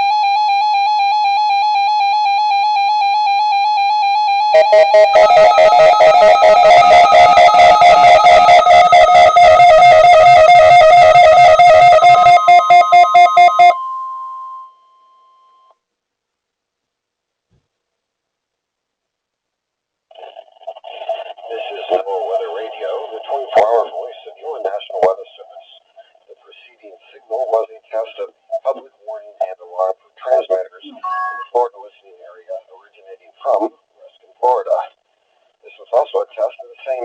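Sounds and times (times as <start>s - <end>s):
electronic warbling alarm tone: 0.0s - 14.7s
higher steady tone: 4.5s - 15.7s.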